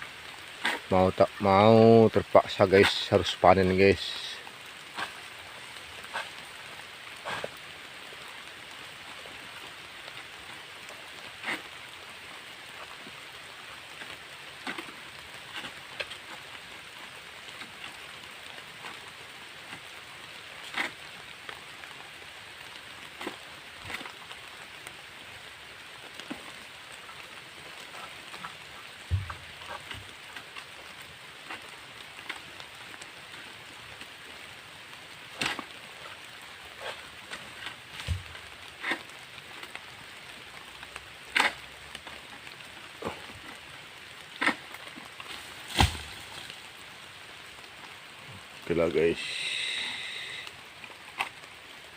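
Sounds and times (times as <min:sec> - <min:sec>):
steady rain falling: 0:00.0 - 0:51.9
low thud: 0:29.1 - 0:29.4
sharp taps and knocks: 0:29.1 - 0:30.0.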